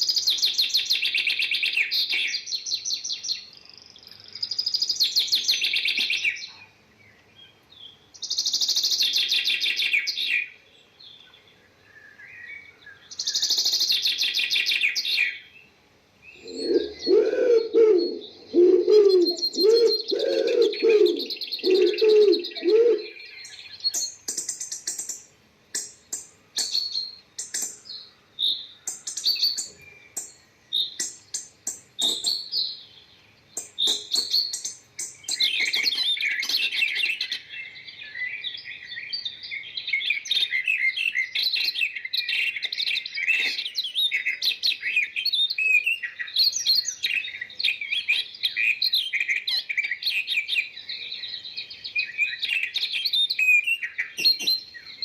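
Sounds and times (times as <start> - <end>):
small birds chirping: 0.0 - 55.0.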